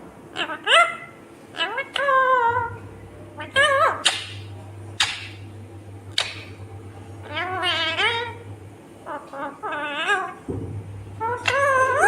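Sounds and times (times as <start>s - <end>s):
steady low hum: 0.0s - 12.0s
parakeet squawking and calling: 0.3s - 2.8s, 3.4s - 5.4s, 6.1s - 6.6s, 7.2s - 10.5s, 11.2s - 12.0s.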